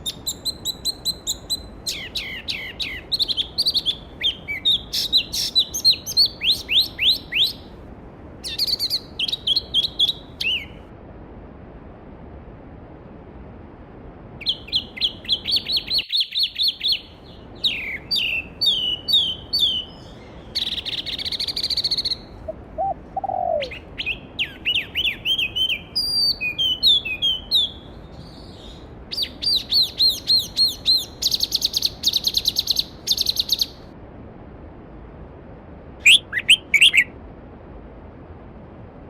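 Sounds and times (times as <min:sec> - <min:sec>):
lower bird call: 0:00.0 - 0:07.8, 0:14.4 - 0:33.8
songbird chirping and trilling: 0:00.0 - 0:07.8, 0:08.4 - 0:10.9, 0:14.4 - 0:33.9, 0:36.0 - 0:37.2.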